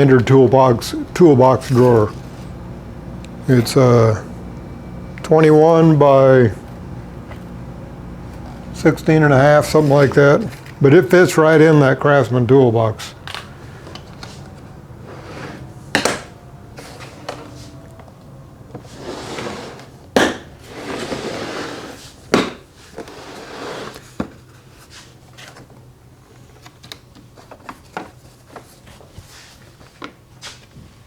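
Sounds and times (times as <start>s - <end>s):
case scraping in drawer: 13.7s - 15.8s, 18.8s - 20.0s, 20.6s - 24.3s.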